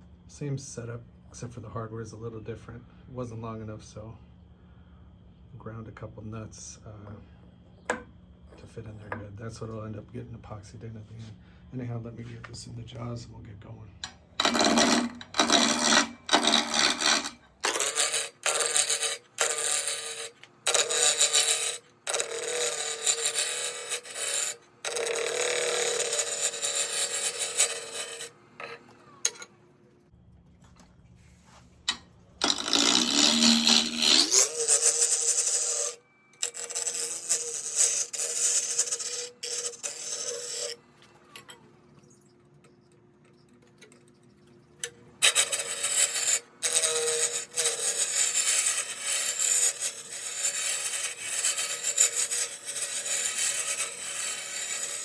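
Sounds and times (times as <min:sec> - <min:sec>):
gouge scraping wood on lathe: 0:14.0 - 0:28.9, 0:32.4 - 0:40.8, 0:45.2 - 0:55.0
lathe hum: 0:14.0 - 0:29.5, 0:31.9 - 0:41.9, 0:45.2 - 0:55.0.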